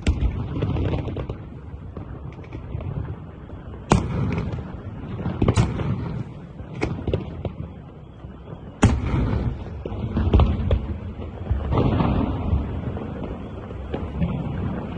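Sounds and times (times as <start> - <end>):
firework cracks: 0.0 - 14.9
fireworks booming: 0.0 - 14.9
sharp firework bangs: 3.8 - 7.6, 8.8 - 14.9.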